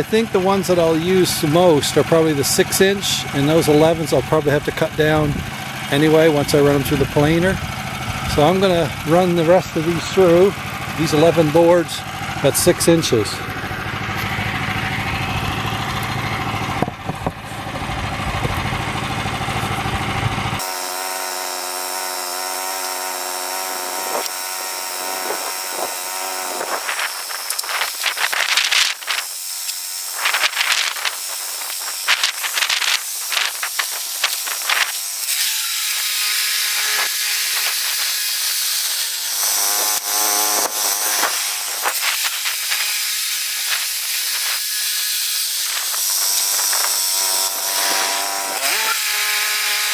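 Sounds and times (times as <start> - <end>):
band sawmill running: 0.0 - 49.9
sharp knocks and clatters: 16.7 - 18.8.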